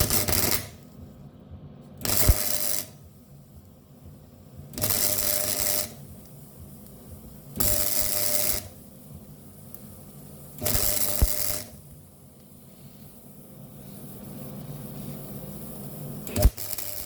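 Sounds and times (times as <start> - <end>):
welding arc crackling: 0.0 - 0.8, 2.0 - 17.0.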